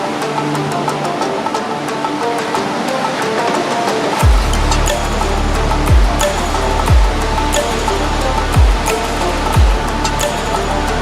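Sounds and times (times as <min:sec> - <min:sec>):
electronic music with a beat: 0:00.0 - 0:11.0
deep bass hits sliding down: 0:04.2 - 0:11.0.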